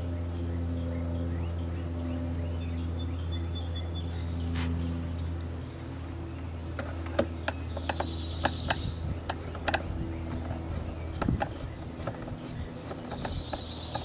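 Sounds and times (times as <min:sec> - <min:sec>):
steady low hum: 0:00.0 - 0:14.0
hand tools clicking and tapping: 0:06.7 - 0:14.0.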